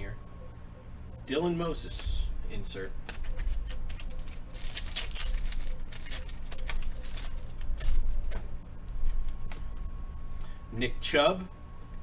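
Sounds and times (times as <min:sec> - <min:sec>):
trading cards rustling and flicking: 0:03.0 - 0:09.8.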